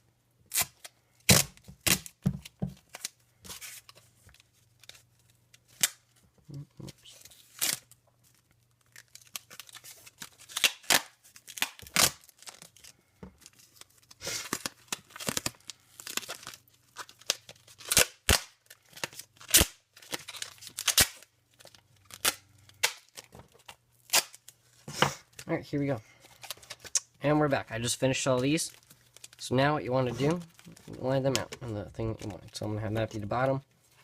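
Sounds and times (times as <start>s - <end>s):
duct tape ripping off roll: 0.5s - 2.2s, 8.9s - 12.7s, 17.2s - 21.3s, 24.0s - 24.4s.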